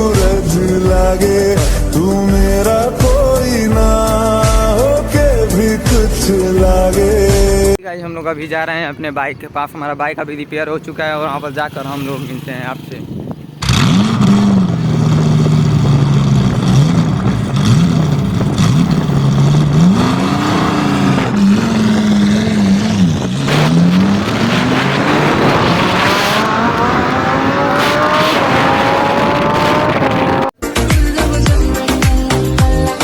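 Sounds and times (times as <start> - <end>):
motorcycle engine revving: 11.2 - 30.6
motorcycle accelerating away: 11.8 - 30.6.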